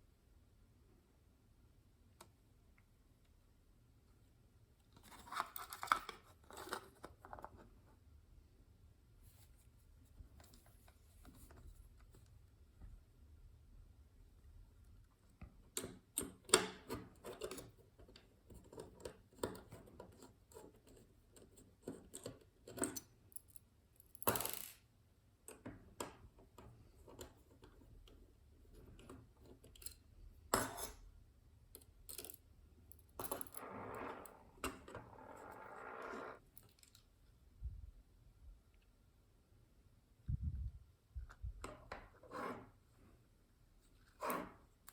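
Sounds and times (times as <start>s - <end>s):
small parts and tools clattering: 31.8s - 33.6s.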